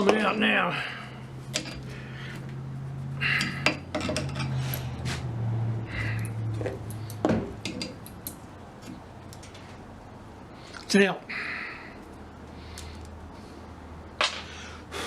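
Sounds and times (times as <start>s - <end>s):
low steady hum: 0.0s - 15.0s
metal clinks and knocks: 1.5s - 2.6s, 3.3s - 5.1s, 5.9s - 9.8s.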